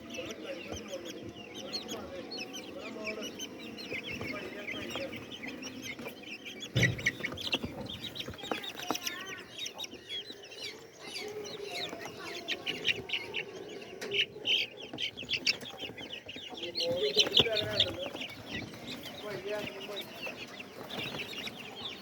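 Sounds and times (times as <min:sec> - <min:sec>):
chickens clucking: 0:00.0 - 0:22.0.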